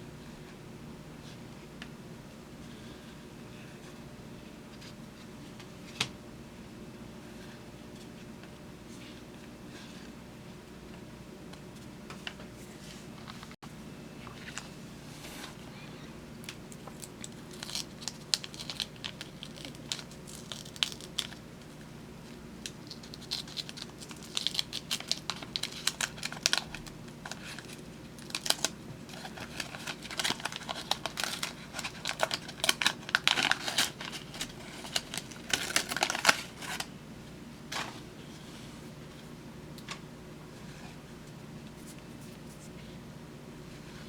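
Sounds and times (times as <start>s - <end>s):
wax paper wrapper crinkling and tearing: 16.7s - 36.9s.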